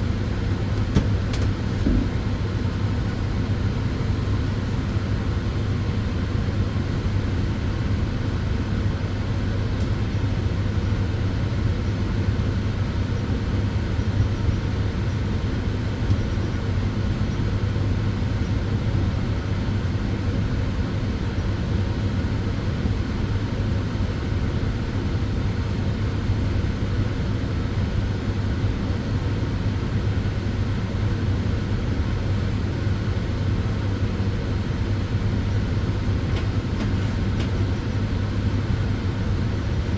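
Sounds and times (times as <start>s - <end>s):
cooling fans whooshing: 0.0s - 10.6s, 29.9s - 39.9s
low even hum: 0.0s - 10.9s.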